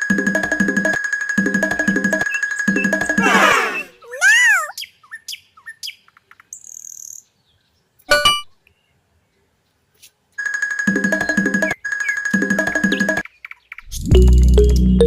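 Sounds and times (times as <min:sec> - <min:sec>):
bird chirping and twittering: 0:02.2 - 0:09.0.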